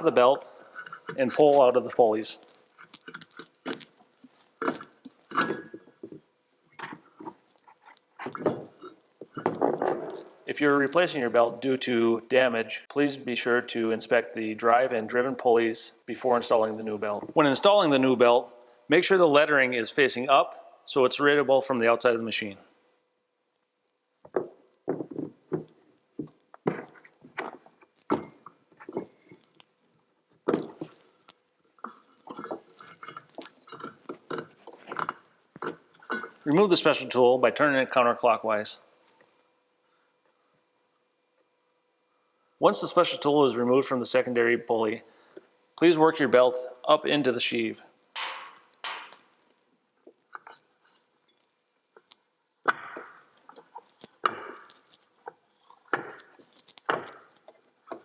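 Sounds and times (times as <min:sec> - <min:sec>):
knocks and metallic clinks: 0:48.2 - 0:49.2.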